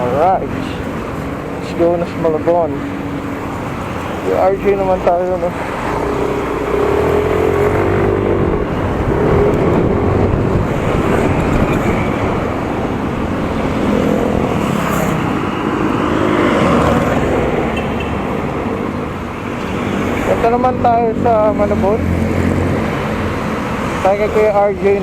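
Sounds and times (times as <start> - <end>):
wind and road noise: 0.0 - 25.0
motorcycle engine revving: 5.5 - 17.8.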